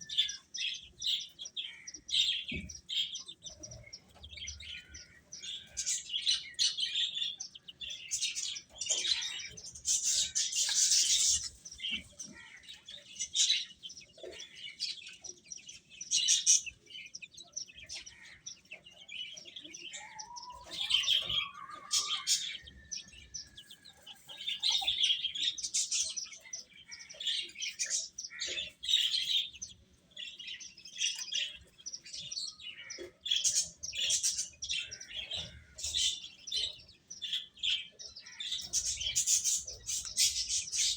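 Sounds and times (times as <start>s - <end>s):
chicks peeping: 0.0s - 40.9s.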